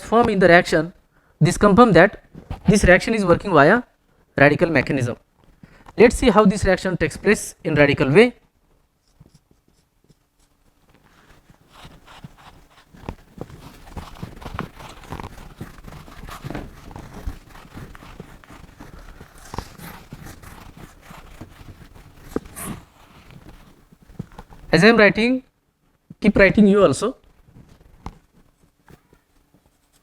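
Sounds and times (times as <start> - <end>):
pen writing on a surface: 9.0 - 24.7.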